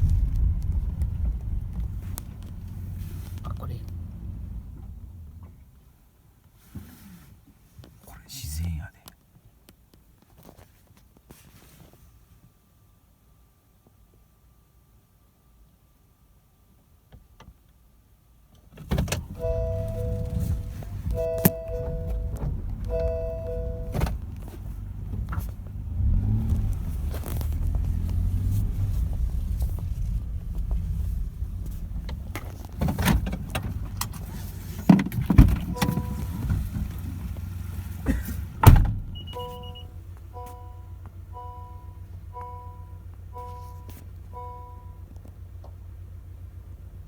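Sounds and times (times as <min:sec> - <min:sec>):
car engine rumbling: 0:00.0 - 0:06.3, 0:18.8 - 0:47.0
repeating car chime: 0:19.3 - 0:24.4, 0:35.7 - 0:36.5, 0:39.1 - 0:45.0.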